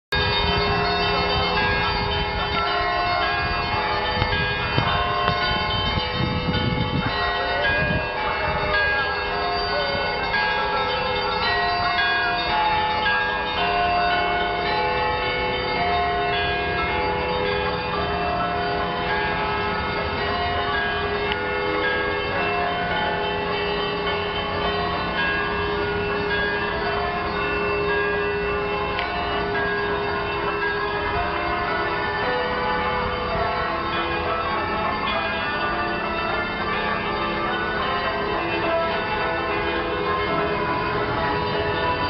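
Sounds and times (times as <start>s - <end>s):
cathedral bells pealing: 0.1s - 42.0s.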